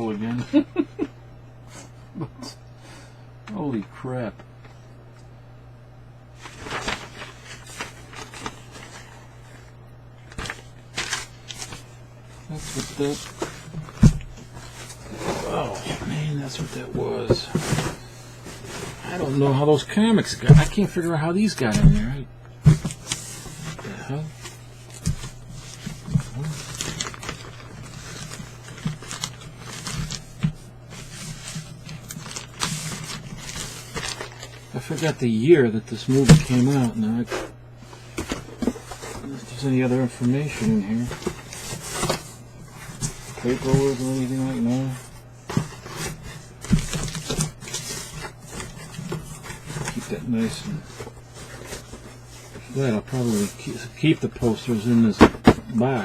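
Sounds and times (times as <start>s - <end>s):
steady low hum: 0.0s - 56.0s
paper rustling and knocks: 6.4s - 9.2s, 10.2s - 11.9s, 12.5s - 19.3s, 21.6s - 35.2s, 36.0s - 53.8s, 54.8s - 56.0s.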